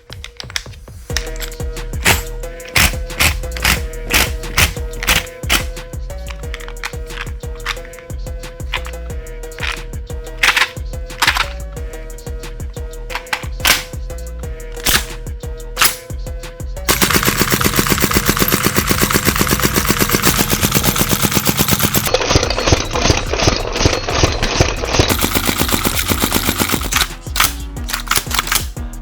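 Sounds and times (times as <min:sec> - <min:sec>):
mechanical clicks: 0:00.1 - 0:08.0, 0:10.4 - 0:11.6, 0:16.9 - 0:28.8
airsoft rifle firing full auto: 0:16.9 - 0:28.8.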